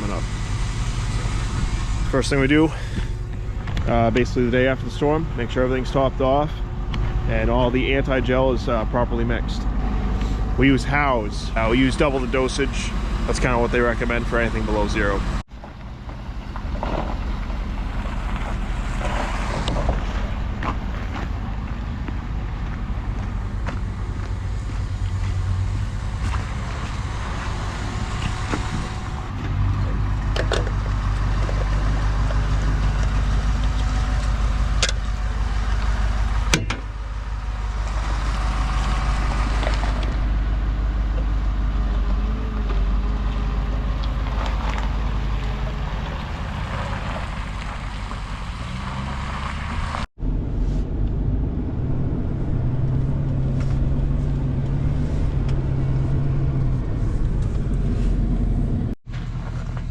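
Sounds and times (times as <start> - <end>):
vehicle engine running: 0.0 - 59.9.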